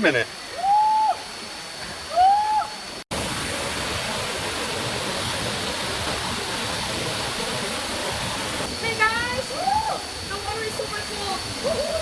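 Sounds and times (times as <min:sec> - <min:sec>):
waterfall pouring into a pool: 0:01.3 - 0:12.0
voice-like ooh: 0:11.6 - 0:12.0.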